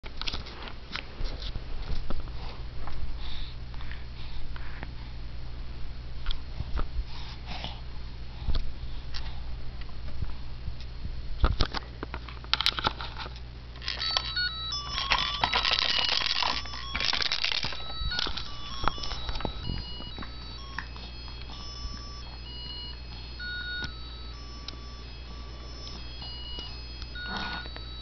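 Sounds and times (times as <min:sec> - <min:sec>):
toy beeping tune: 0:13.8 - 0:28.0.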